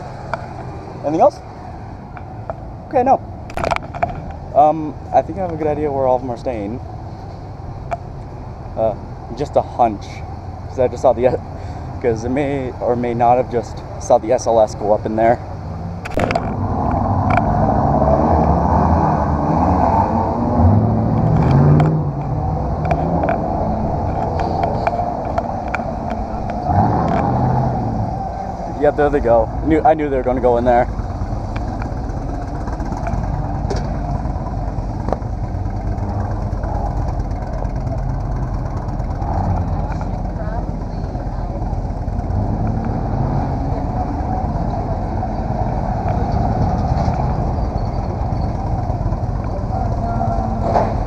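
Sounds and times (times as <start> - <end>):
road rumble: 0.0 - 51.0
car engine running: 20.4 - 51.0.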